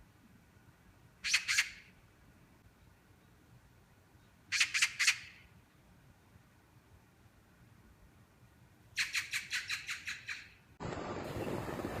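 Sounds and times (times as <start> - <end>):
magpie chattering: 1.2 - 1.8, 4.5 - 5.4, 9.0 - 10.5.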